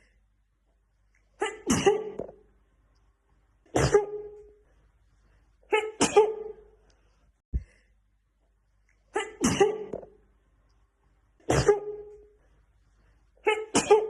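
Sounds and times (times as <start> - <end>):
woman sneezing: 1.4 - 2.2, 3.7 - 4.3, 5.7 - 6.6, 9.2 - 10.0, 11.4 - 12.1, 13.4 - 14.0.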